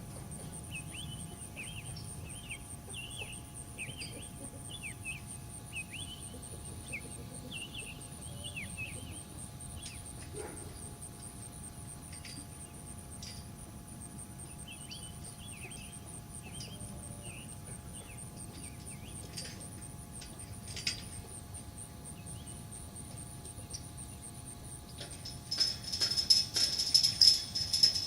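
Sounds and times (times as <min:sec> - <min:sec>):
insects trilling: 0:00.0 - 0:28.0.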